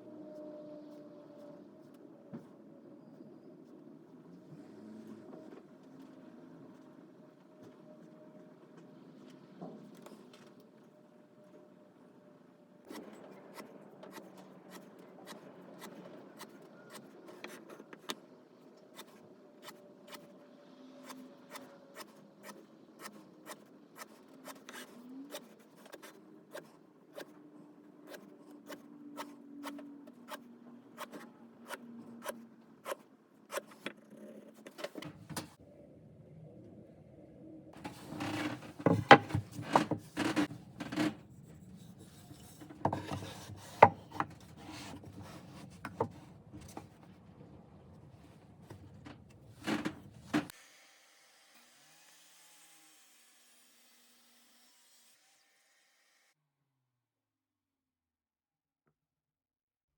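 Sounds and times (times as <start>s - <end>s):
faint hum: 34.1s - 38.3s.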